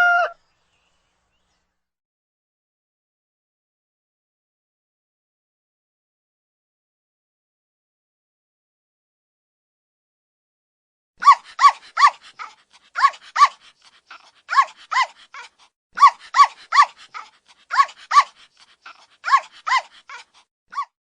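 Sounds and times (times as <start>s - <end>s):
dog barking: 11.2s - 15.2s, 16.0s - 19.9s.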